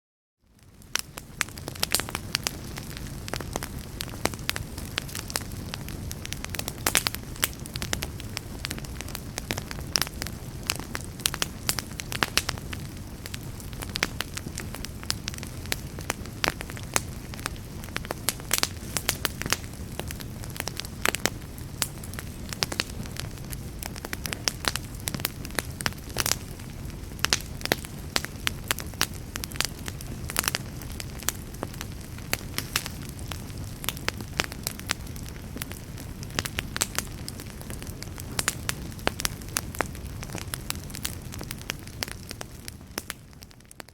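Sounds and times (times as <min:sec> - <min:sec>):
fire crackling and popping: 0:00.4 - 0:43.9.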